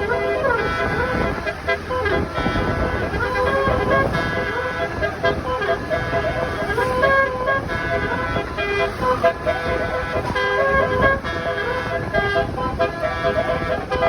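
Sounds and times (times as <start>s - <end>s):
multi-trumpet air horn tune: 0.0s - 14.0s.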